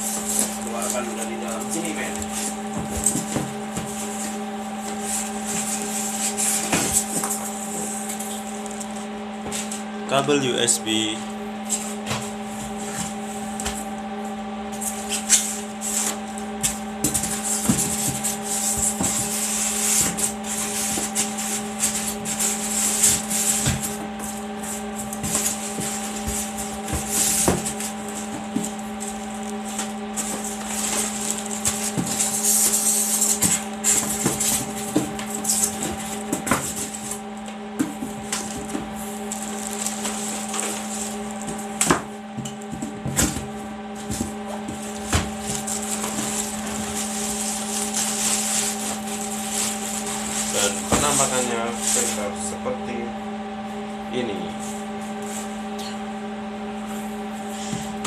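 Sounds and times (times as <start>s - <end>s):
steady hum: 0.0s - 58.0s
plastic packaging rustling: 14.8s - 37.2s, 38.0s - 42.8s, 43.4s - 52.3s.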